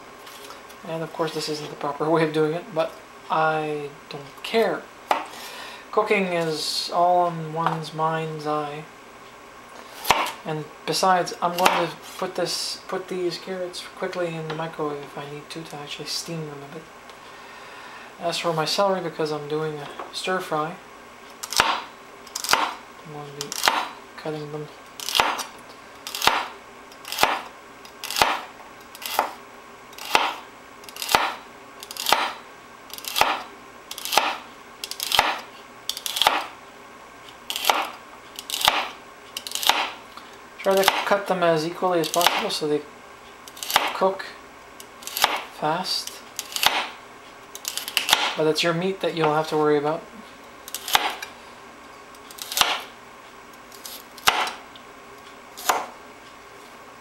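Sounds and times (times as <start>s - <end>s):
knife slicing celery on board: 10.0s - 10.4s, 11.5s - 11.9s, 21.4s - 22.8s, 23.4s - 23.9s, 25.0s - 25.5s, 26.1s - 29.4s, 30.0s - 32.4s, 33.0s - 36.5s, 37.5s - 40.0s, 40.7s - 41.2s, 42.0s - 42.5s, 43.5s - 44.0s, 45.0s - 45.5s, 46.4s - 46.9s, 47.6s - 48.4s, 50.7s - 51.2s, 52.3s - 52.9s, 53.8s - 54.6s, 55.6s - 55.9s.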